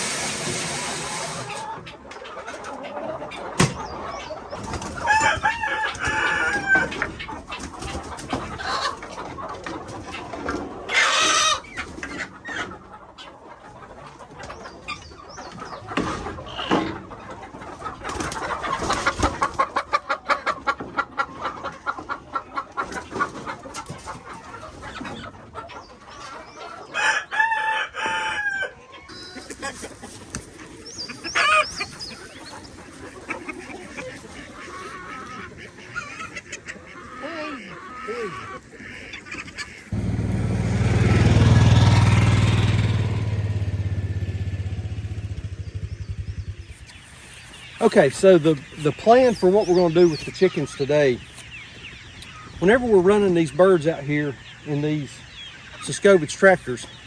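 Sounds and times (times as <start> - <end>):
chickens clucking: 0.0 - 57.0
rooster crowing: 5.0 - 7.0, 27.0 - 28.8, 39.9 - 44.8.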